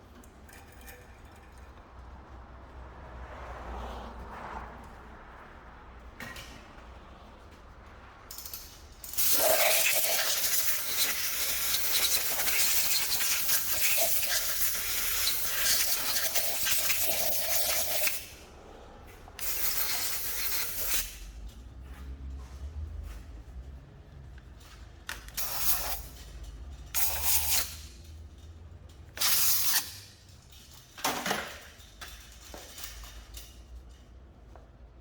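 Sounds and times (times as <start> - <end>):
compressed air hissing: 9.0 - 18.3.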